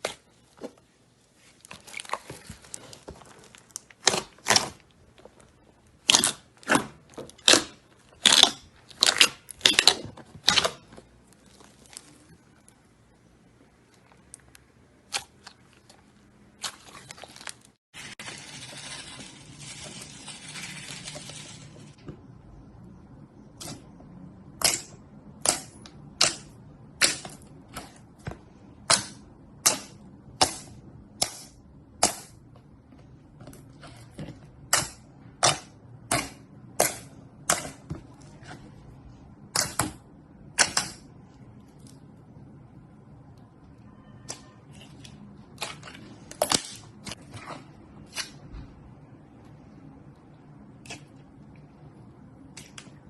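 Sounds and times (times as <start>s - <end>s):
slime crackling: 1.3s - 12.8s.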